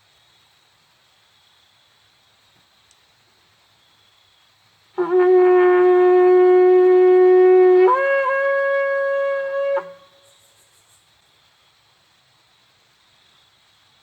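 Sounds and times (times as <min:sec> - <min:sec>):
shofar blast: 0:05.0 - 0:10.2.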